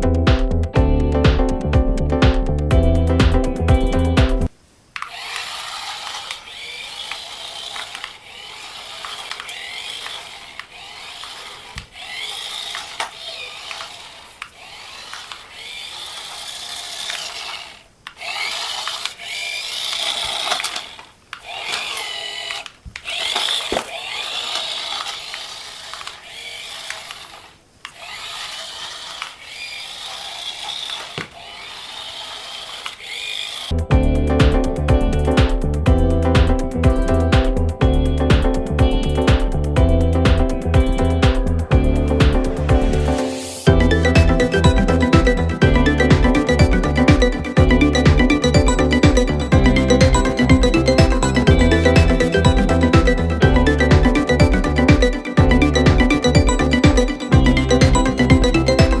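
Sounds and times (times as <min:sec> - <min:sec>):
toy electric motor and gears: 0:05.0 - 0:33.8, 0:40.7 - 0:41.4.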